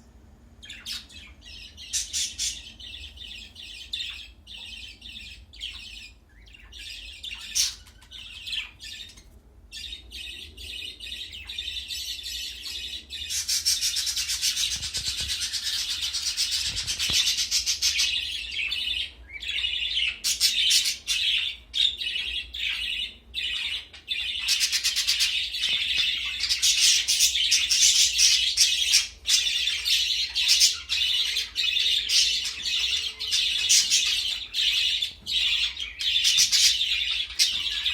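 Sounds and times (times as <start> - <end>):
budgies chirping and chattering: 0.6 - 37.9.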